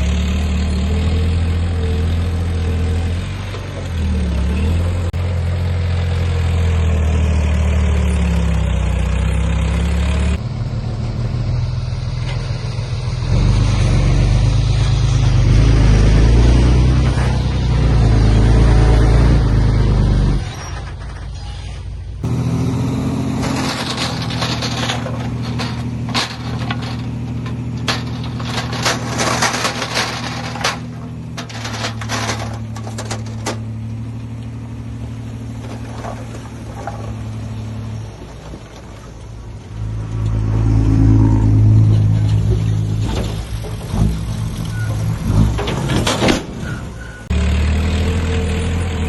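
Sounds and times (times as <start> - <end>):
heavy diesel machinery running: 0.0 - 49.0
sharp metal clanks and knocks: 23.2 - 34.0.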